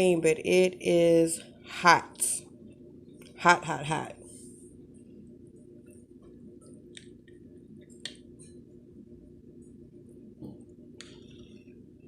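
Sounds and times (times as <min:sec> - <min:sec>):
faint clicks and taps: 0:05.5 - 0:08.6.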